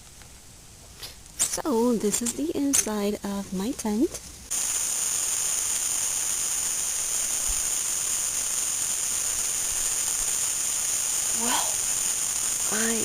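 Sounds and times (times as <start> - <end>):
high-pitched insect chorus: 4.5 - 13.0.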